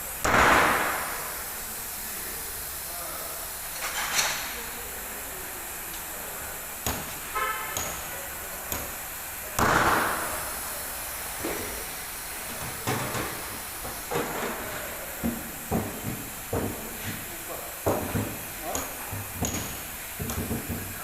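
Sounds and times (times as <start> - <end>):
steady hiss: 0.0 - 21.0
sharp knocks and clicks: 17.9 - 20.9.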